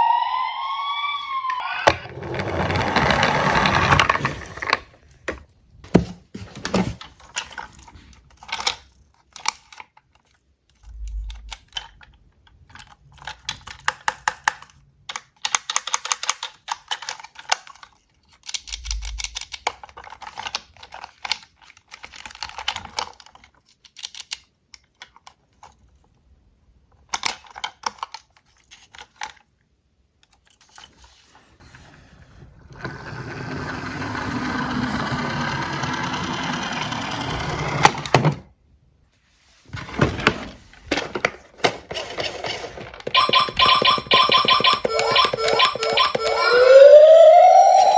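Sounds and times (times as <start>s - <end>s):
toy cars clicking and clattering: 7.3s - 26.0s, 26.9s - 29.5s, 41.0s - 46.3s.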